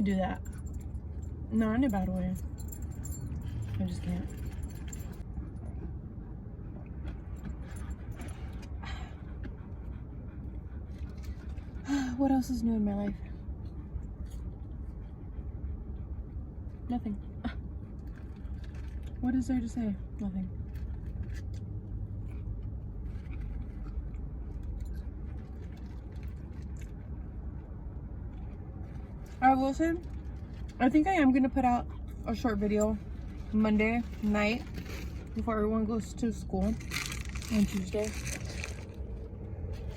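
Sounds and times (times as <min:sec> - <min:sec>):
steady low rumble: 0:00.0 - 0:39.9
food crunch: 0:20.7 - 0:27.6, 0:36.7 - 0:39.9
food and wrapper rustling: 0:36.6 - 0:39.9.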